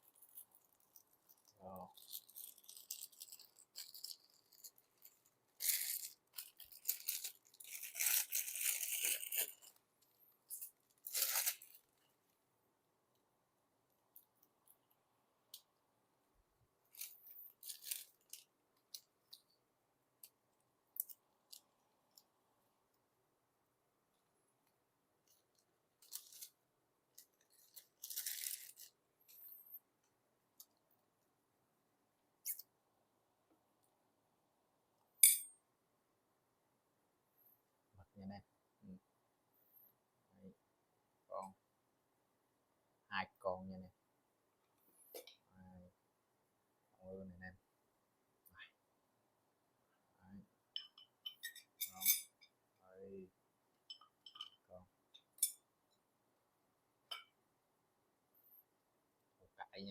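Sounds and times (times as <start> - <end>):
plastic packaging crinkling: 0.0 - 9.8, 10.5 - 12.0, 16.9 - 19.0, 27.2 - 29.0.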